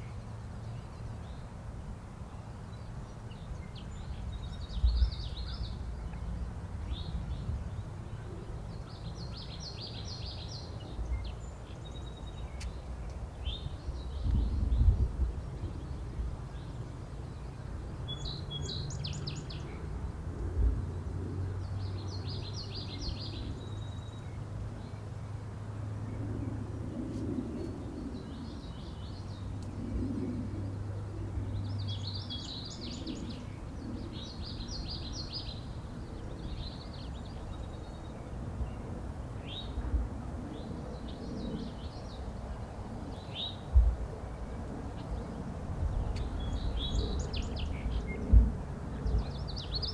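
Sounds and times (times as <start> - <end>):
songbirds singing: 2.3 - 20.2, 21.4 - 49.9.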